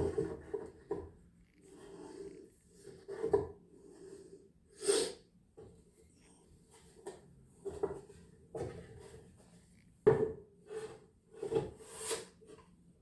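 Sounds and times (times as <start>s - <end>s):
objects scraping and knocking: 0.0s - 2.2s, 2.8s - 4.2s, 6.7s - 12.7s.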